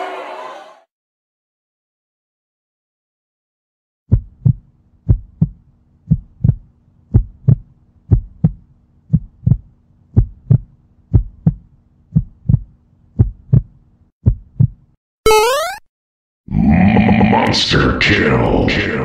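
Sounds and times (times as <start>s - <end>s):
heartbeat thumps: 4.1s - 14.8s.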